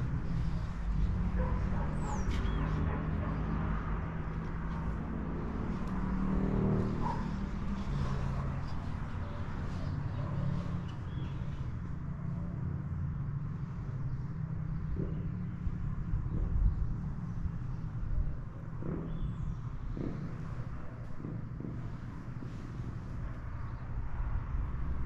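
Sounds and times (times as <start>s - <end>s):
vehicle engine humming: 0.0s - 25.0s.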